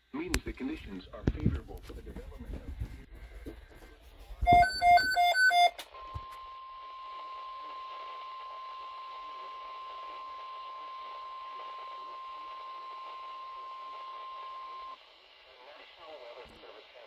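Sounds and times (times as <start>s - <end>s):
radio hiss: 0.0s - 5.6s, 7.9s - 17.0s
steady warning alarm tone: 4.4s - 5.8s
loud electronic beeps: 4.5s - 5.7s.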